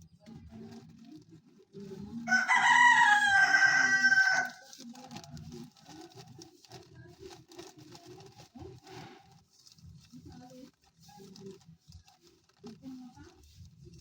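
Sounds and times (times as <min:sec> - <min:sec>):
rooster crowing: 0:02.3 - 0:04.6.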